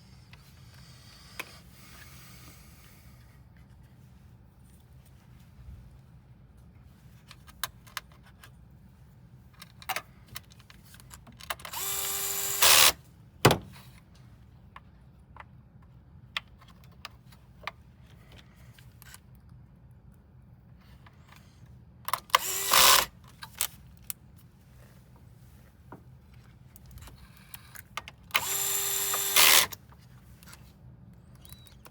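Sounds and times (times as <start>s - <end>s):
electric screwdriver whirring: 11.7s - 13.0s, 22.2s - 23.1s, 28.4s - 29.8s.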